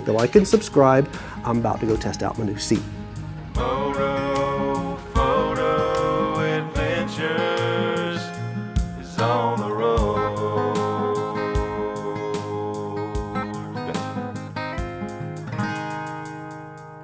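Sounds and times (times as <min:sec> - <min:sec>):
steady drum beat: 0:00.0 - 0:16.7
guitar: 0:00.0 - 0:17.0
country song with singing: 0:03.4 - 0:14.7.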